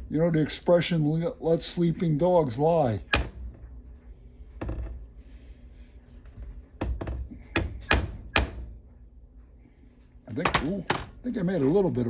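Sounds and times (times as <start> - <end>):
hammer tapping sheet metal: 3.1 - 3.7, 7.5 - 9.0.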